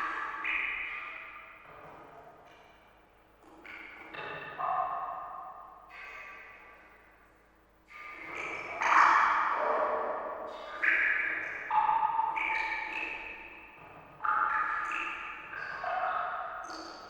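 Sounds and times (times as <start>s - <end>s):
water drops plinking into water: 10.7s - 13.6s.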